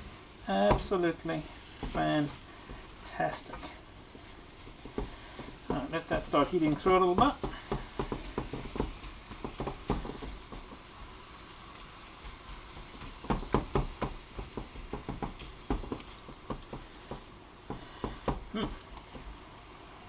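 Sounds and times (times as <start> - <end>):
chicken sizzling in a pan: 0.0 - 20.0
utensil knocking against pan: 7.0 - 10.8.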